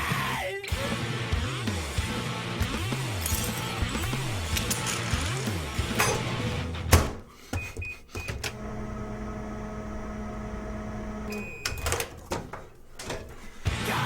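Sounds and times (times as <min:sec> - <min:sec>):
microwave door clicks: 0:05.9 - 0:07.3
microwave keypad beeps: 0:07.5 - 0:08.5, 0:11.3 - 0:12.0
microwave oven humming: 0:07.8 - 0:13.0.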